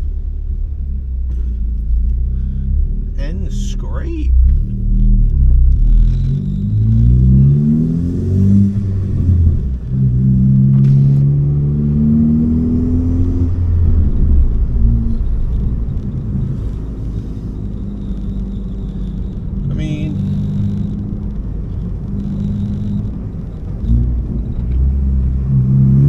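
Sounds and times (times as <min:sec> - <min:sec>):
turbocharged car engine accelerating: 0:00.0 - 0:26.0.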